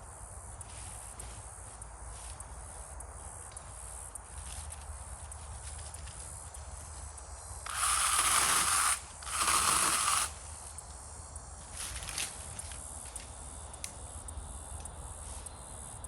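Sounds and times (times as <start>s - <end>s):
mini chainsaw cutting wood: 7.6s - 10.5s.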